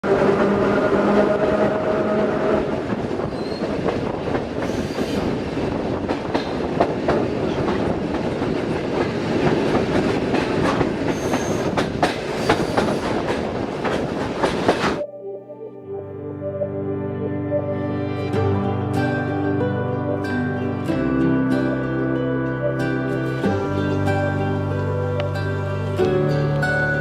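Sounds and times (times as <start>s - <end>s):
train rumbling along rails: 0.0s - 15.0s
wheels clicking over rail joints: 2.9s - 15.0s.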